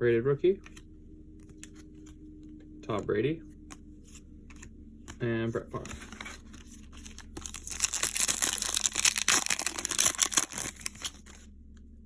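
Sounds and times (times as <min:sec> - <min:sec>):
plastic wrapper crinkling and tearing: 0:06.1 - 0:11.5.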